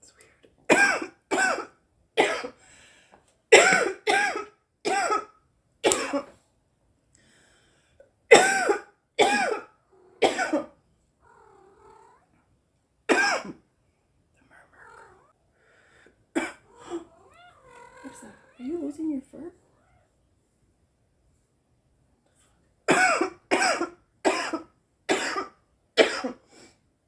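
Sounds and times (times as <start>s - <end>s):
woman coughing: 0.7s - 2.6s, 3.5s - 6.3s, 8.3s - 10.8s, 13.1s - 13.6s, 22.9s - 26.4s.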